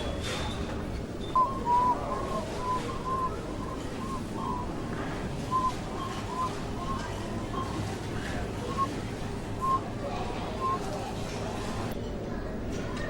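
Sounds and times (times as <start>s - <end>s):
steady background noise: 0.0s - 13.0s.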